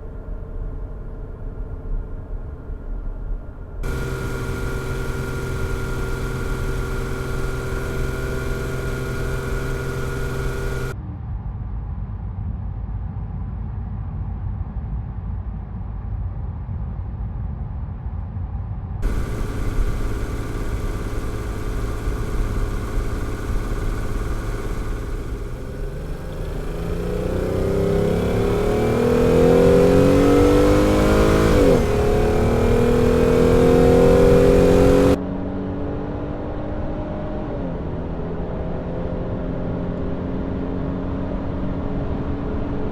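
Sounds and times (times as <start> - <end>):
car engine rumbling and accelerating: 0.0 - 11.0, 19.0 - 35.2.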